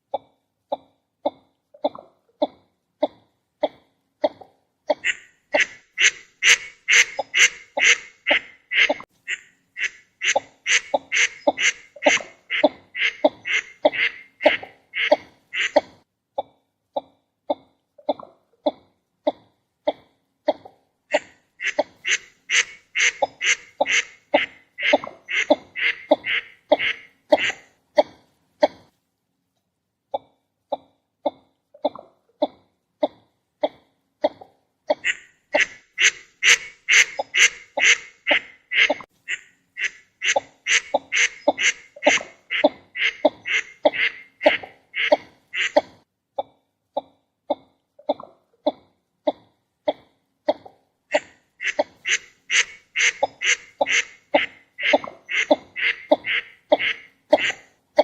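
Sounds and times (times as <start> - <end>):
duck calling: 4.9 - 15.9, 21.1 - 27.7, 34.9 - 45.9, 51.1 - 57.7.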